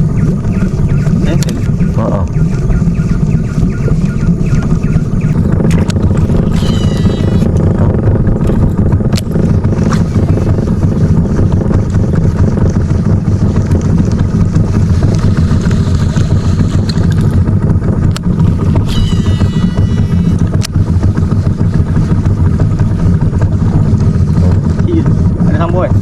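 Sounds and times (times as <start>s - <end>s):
engine drone: 0.0s - 26.0s
high-pitched tone: 6.2s - 7.5s, 18.7s - 20.5s.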